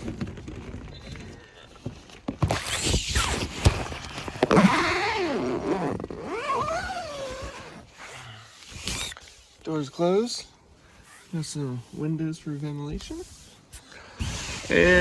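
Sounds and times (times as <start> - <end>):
tent zipper being pulled: 2.5 - 9.3.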